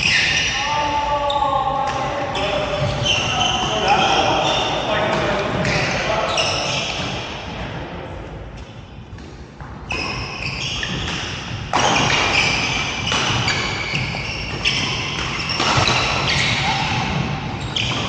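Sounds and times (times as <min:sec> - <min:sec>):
shuffling footwork on court: 0:01.8 - 0:07.4.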